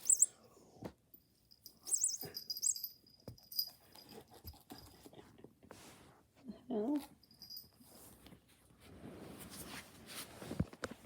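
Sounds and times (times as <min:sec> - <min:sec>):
cat squeaky cries: 0:00.0 - 0:00.3, 0:01.9 - 0:02.8.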